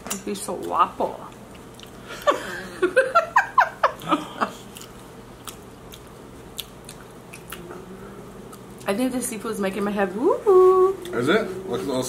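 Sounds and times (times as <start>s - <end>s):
person laughing: 2.1s - 4.7s
faint eating clicks: 4.7s - 7.8s.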